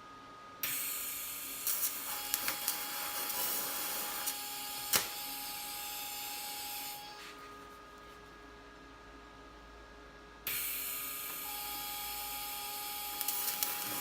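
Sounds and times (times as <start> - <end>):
welding arc snap: 0.6 - 7.0, 12.1 - 14.0
welding arc hissing: 0.7 - 7.1, 12.0 - 14.0.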